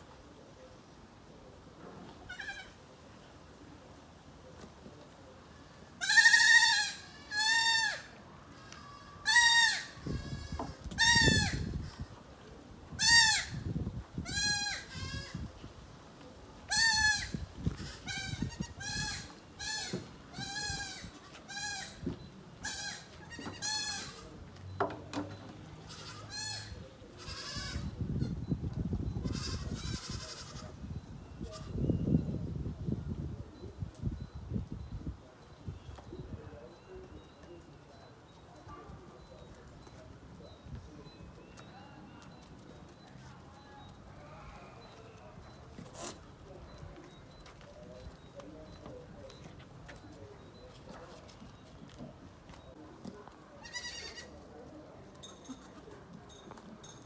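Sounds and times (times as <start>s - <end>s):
goats bleating: 25.9s - 27.8s, 53.6s - 54.3s.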